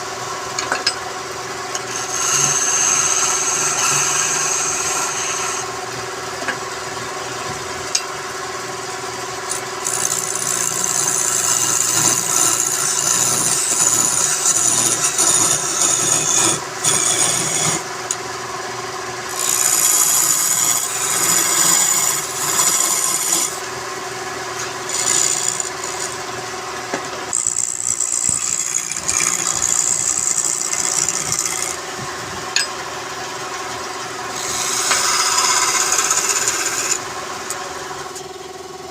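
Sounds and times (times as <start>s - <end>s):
wood lathe humming: 1.5s - 7.4s, 8.6s - 32.7s, 33.8s - 38.6s
tool rasping on spinning wood: 1.8s - 5.8s, 9.5s - 18.2s, 19.3s - 23.7s, 24.6s - 26.4s, 27.3s - 31.9s, 34.3s - 37.0s.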